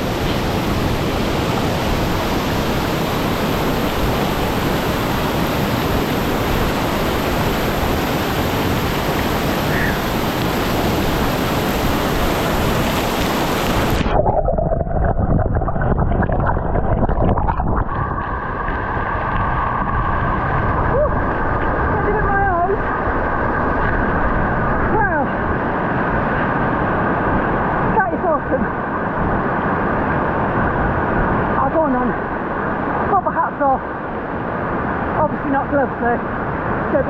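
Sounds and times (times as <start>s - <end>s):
waterfall rushing: 0.0s - 14.6s
muffled underwater rush: 0.0s - 35.6s.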